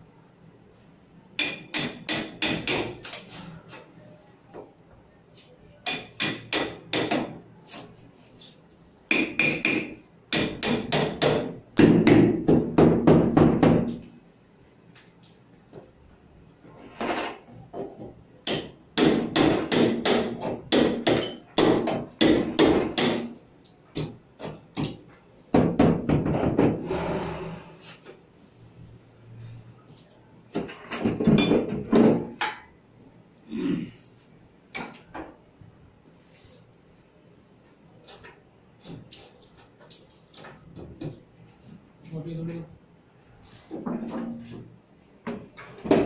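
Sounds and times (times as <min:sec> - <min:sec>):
hammer blows: 0:26.8 - 0:28.0.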